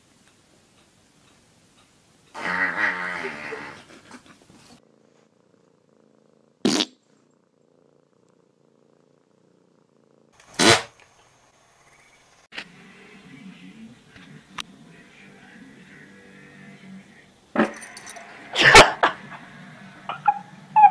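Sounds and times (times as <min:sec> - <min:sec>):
cat yowling: 0:20.1 - 0:20.9.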